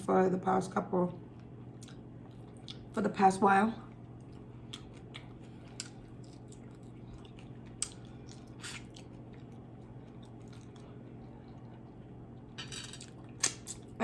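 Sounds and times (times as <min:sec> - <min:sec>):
steady low hum: 0:00.0 - 0:14.0
person chewing crispy food: 0:01.4 - 0:02.9, 0:03.9 - 0:13.4.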